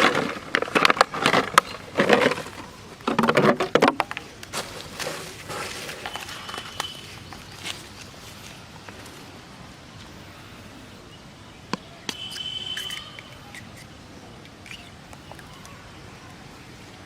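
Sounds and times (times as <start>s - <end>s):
outdoor background hiss: 0.0s - 17.0s
high bird chirp: 6.1s - 7.8s.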